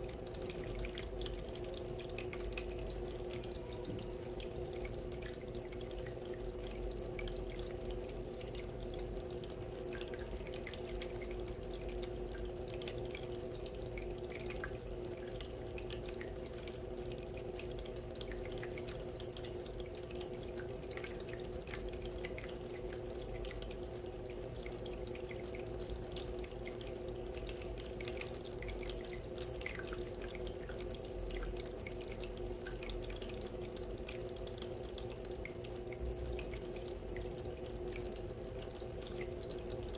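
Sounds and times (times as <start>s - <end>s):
steady hum: 0.0s - 39.9s
water trickling and dripping: 0.0s - 39.9s.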